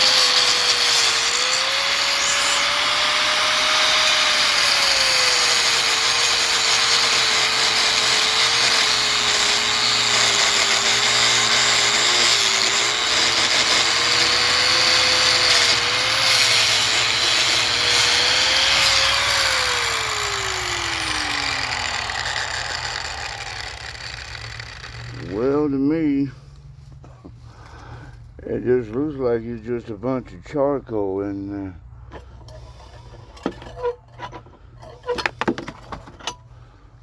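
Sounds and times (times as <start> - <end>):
motor whine: 0.0 - 25.4
power tool cutting plastic: 0.0 - 25.8.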